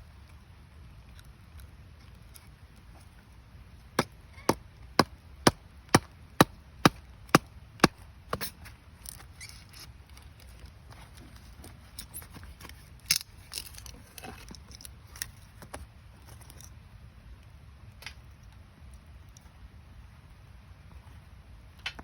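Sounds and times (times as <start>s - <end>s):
axe chopping firewood: 4.0s - 8.6s.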